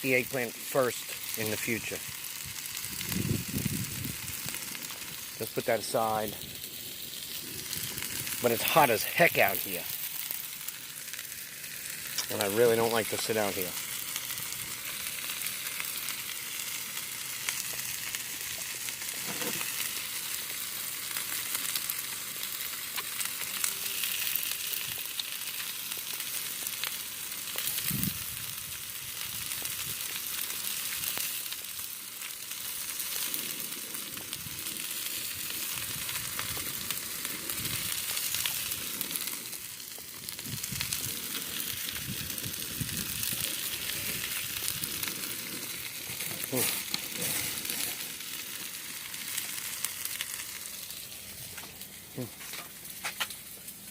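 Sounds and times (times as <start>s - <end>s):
food sizzling in oil: 0.0s - 53.9s.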